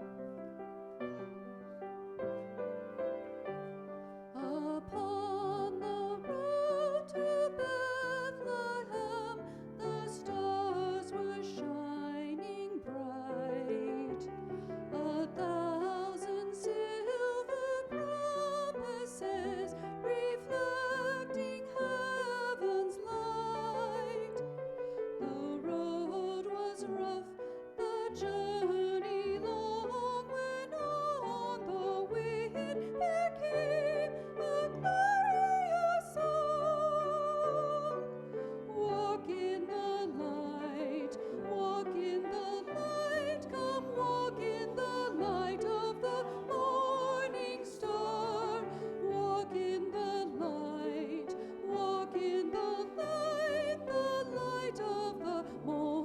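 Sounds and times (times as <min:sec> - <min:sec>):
person singing with vibrato: 0:25.2 - 0:56.0.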